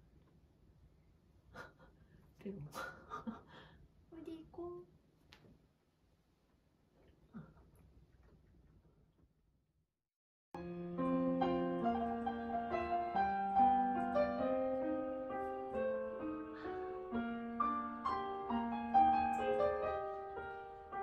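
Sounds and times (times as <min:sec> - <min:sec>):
gentle piano melody: 0:10.6 - 0:21.0.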